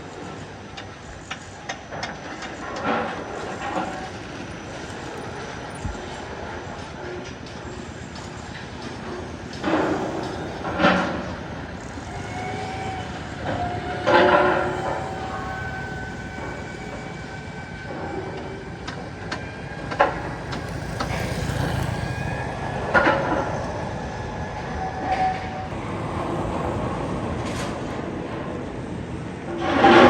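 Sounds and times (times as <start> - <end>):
faint high squeal: 2.2 - 25.8.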